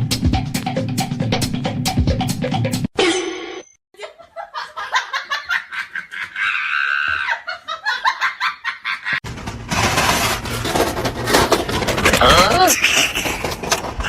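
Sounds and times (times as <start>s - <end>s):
person laughing in bursts: 4.0s - 9.2s.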